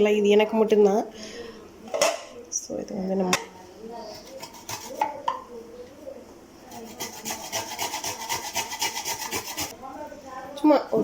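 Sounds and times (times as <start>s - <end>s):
ginger grated on grater: 4.1s - 5.1s, 6.7s - 9.8s.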